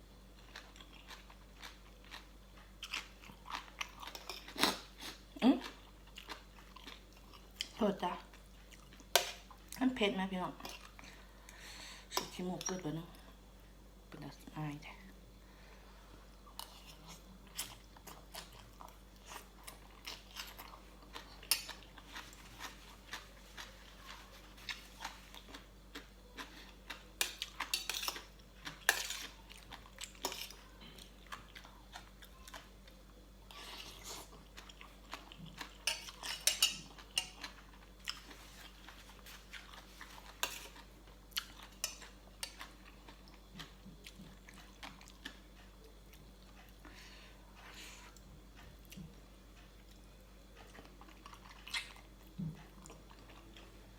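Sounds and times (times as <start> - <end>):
utensils clinking on a dish: 35.8 - 37.4.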